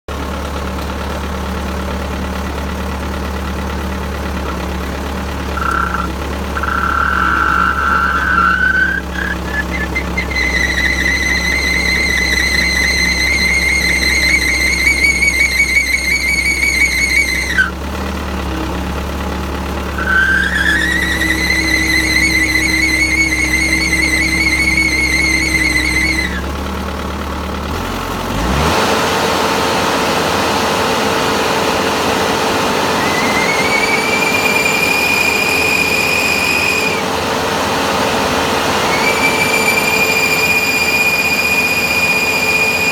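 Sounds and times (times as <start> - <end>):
hydraulic drive squealing: 4.3 - 17.8, 19.8 - 26.6, 32.7 - 37.1, 38.7 - 42.9
machine noise: 4.4 - 17.7.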